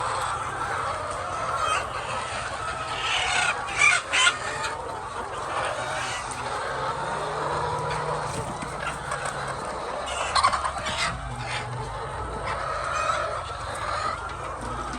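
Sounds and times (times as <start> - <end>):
chicken squawks: 0.0 - 14.9
chickens clucking: 0.0 - 14.9.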